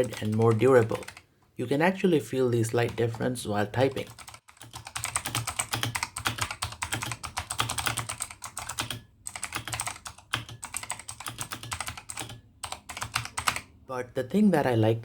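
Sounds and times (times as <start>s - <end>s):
fast typing on mechanical keyboard: 0.0s - 1.2s, 3.8s - 13.7s.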